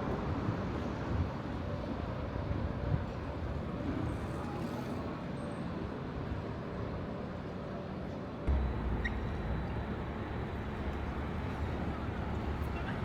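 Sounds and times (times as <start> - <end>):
road traffic rumble: 8.5 - 13.0.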